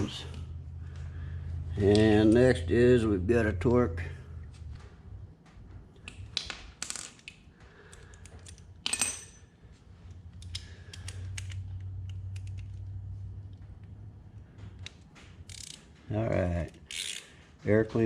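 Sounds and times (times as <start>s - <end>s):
low steady hum: 0.0s - 18.0s
metal tools clicking and clinking: 6.0s - 12.9s, 14.7s - 16.0s.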